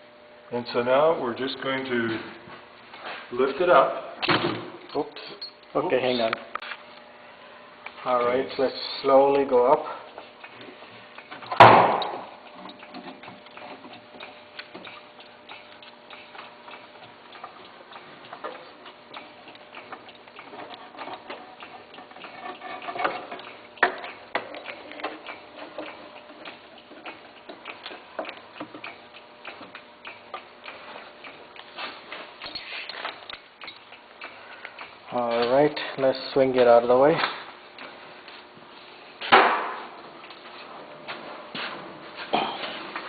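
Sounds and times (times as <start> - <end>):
small ticks and clicks: 10.4 - 36.0
loud clunk: 11.5 - 12.3, 39.3 - 39.8.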